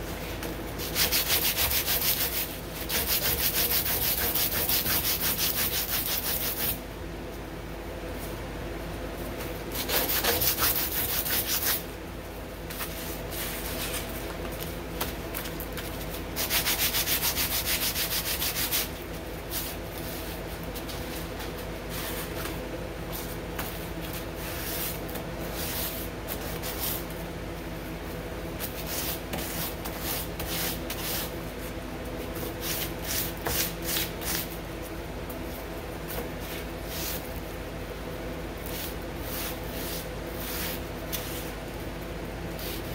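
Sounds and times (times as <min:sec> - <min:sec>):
sandpaper rubbing metal: 0:00.8 - 0:06.8, 0:09.8 - 0:11.8, 0:16.4 - 0:18.9.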